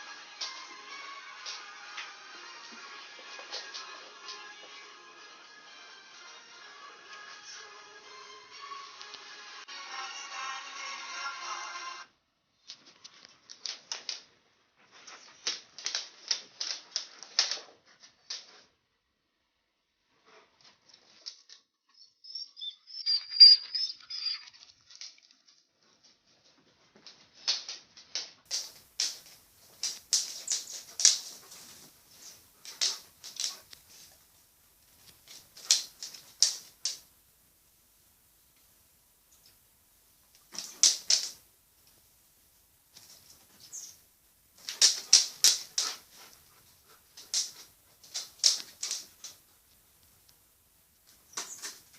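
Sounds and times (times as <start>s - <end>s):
young bird squeaking: 22.2s - 24.5s
light tapping and scratching: 24.9s - 37.1s, 44.6s - 51.9s.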